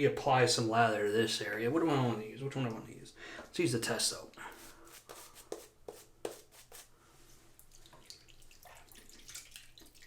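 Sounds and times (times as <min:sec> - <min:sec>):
shaving brush squishing lather: 0:04.5 - 0:06.9.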